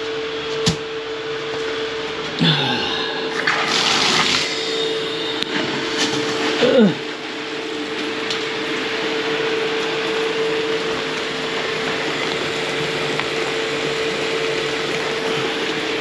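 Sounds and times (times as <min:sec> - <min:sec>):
water rushing through drain: 0:03.3 - 0:16.0
steady whistling tone: 0:04.4 - 0:06.4.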